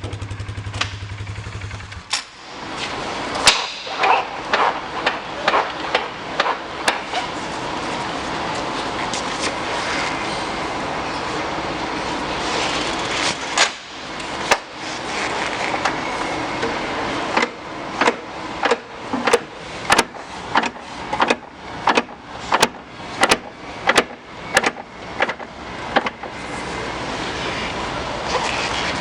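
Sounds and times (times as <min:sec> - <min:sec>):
atv engine running: 0:00.0 - 0:05.0
sharp clicks or knocks: 0:17.4 - 0:26.3.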